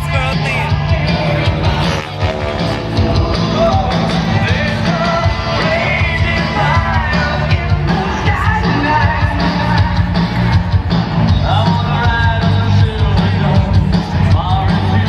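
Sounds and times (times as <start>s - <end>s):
person singing and shouting: 0.0s - 10.0s
loud rock music: 0.0s - 15.0s.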